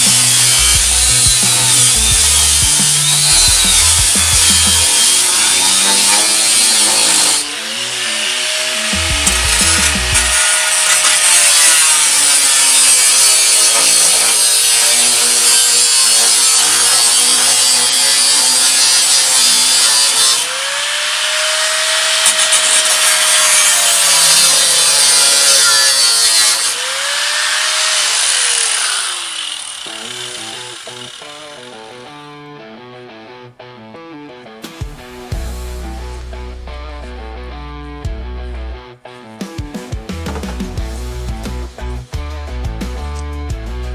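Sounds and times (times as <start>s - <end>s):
background music: 0.0s - 20.3s, 29.9s - 43.9s
reciprocating saw cutting sheet metal: 0.0s - 32.3s.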